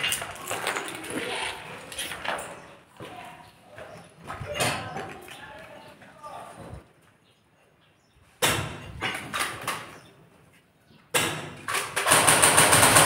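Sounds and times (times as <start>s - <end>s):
automatic airsoft fire: 11.2s - 13.0s.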